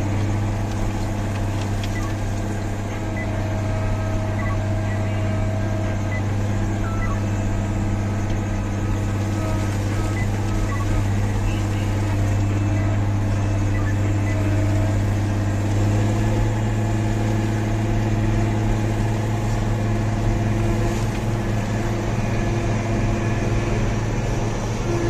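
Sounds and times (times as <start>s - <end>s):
diesel engine running steadily: 0.0s - 25.0s.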